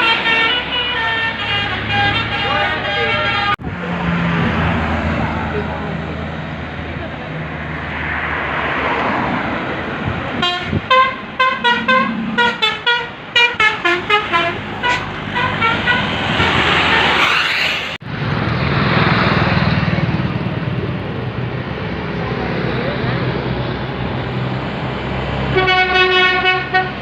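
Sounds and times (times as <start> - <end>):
musical air horn tune: 0.0 - 3.6, 10.4 - 17.2, 25.6 - 27.0
bus passing with engine noise: 0.0 - 27.0.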